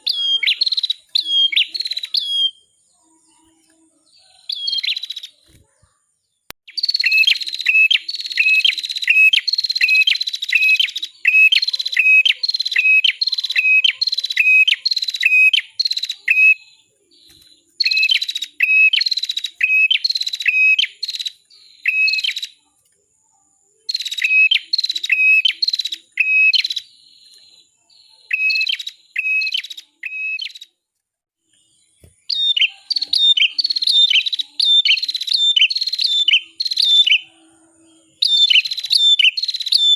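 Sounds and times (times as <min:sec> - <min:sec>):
bird singing rapid high chirps: 0:00.0 - 0:22.7, 0:23.8 - 0:30.7, 0:31.5 - 0:39.9.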